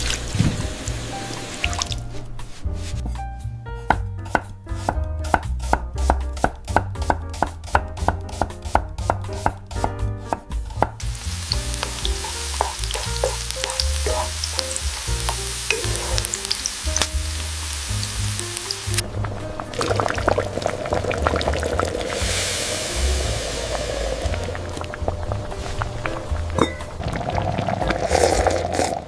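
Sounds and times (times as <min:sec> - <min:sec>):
hiss with crackles: 0:00.0 - 0:03.0, 0:10.7 - 0:27.1.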